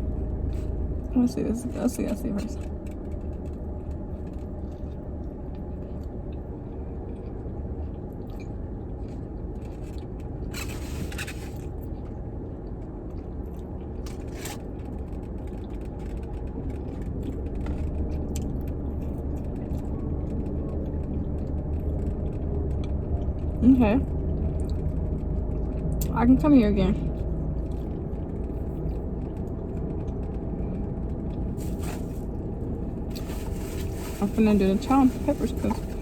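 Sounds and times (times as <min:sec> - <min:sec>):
low cabin hum: 0:00.0 - 0:36.0
person chewing sandwich: 0:02.7 - 0:26.1
brief rustling: 0:31.6 - 0:32.4, 0:33.1 - 0:36.0.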